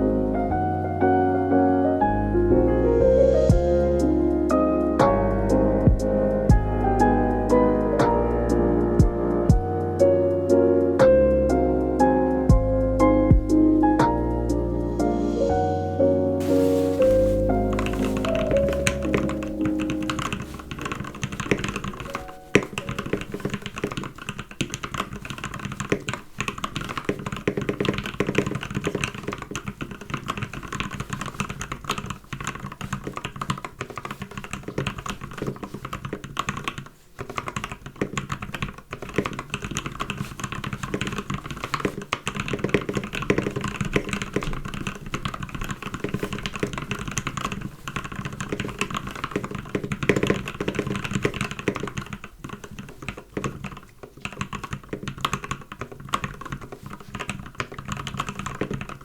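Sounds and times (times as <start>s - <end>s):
fast typing on mechanical keyboard: 16.6s - 59.0s.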